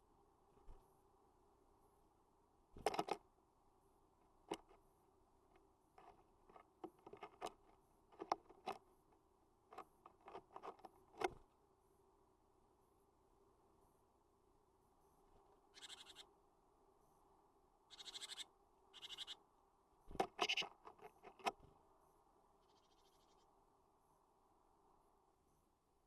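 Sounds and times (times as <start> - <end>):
birds pecking on a feeder: 2.8 - 3.3, 4.5 - 11.5, 20.1 - 21.8.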